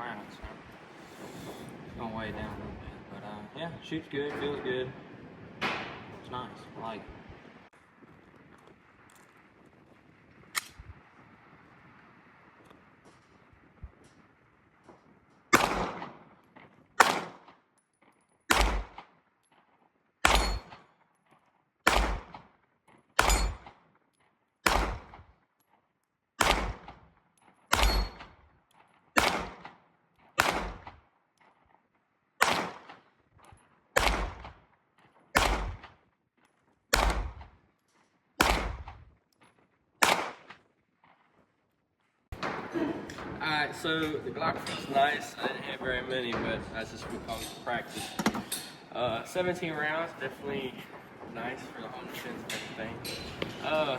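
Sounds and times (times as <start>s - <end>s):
pistol shots: 4.2s - 6.4s, 15.5s - 17.7s, 18.5s - 19.2s, 20.2s - 20.9s, 21.8s - 22.5s, 23.2s - 23.9s, 24.6s - 25.3s, 26.4s - 27.1s, 27.7s - 28.4s, 29.1s - 31.0s, 32.4s - 33.1s, 34.0s - 34.7s, 35.3s - 36.0s, 36.9s - 37.6s, 38.4s - 39.1s, 40.0s - 40.6s, 42.4s - 43.4s.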